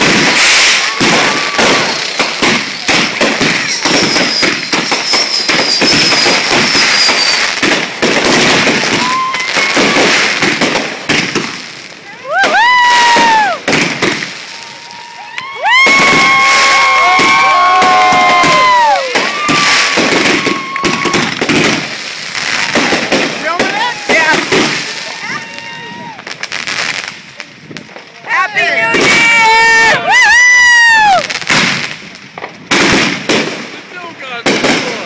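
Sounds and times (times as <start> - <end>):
firecrackers crackling and popping: 0.0 - 35.0
falling whistle: 3.6 - 7.6.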